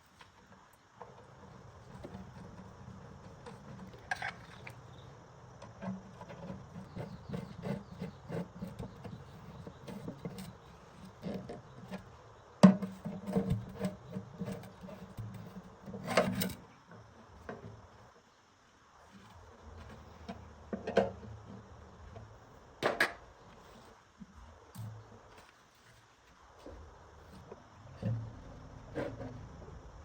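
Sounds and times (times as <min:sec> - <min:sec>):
tools and parts clicking and knocking: 0:12.6 - 0:16.6.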